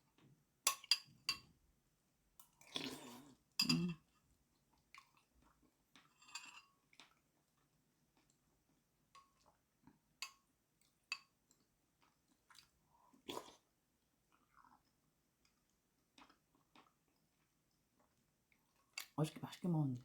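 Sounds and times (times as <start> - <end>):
person chewing food: 2.4 - 3.9, 6.9 - 8.5, 11.6 - 13.7, 14.3 - 19.2.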